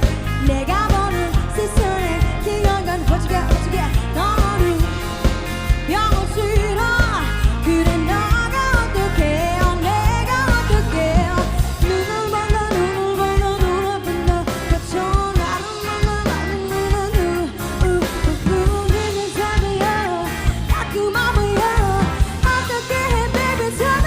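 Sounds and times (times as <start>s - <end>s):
drum kit: 0.0s - 24.0s
guitar: 0.0s - 24.0s.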